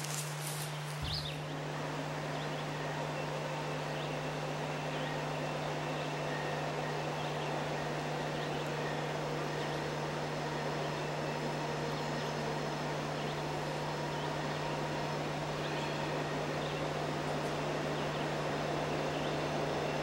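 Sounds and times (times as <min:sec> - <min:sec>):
faint bird chirps: 0:00.6 - 0:01.5.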